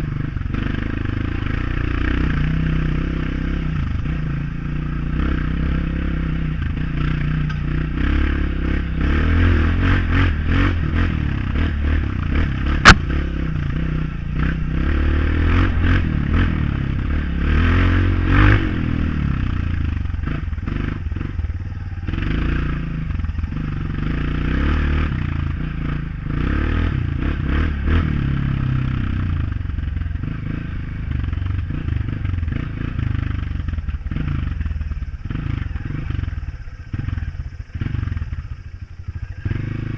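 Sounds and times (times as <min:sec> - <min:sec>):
motorcycle engine revving: 0:00.0 - 0:39.9
sharp knock: 0:12.8 - 0:13.1.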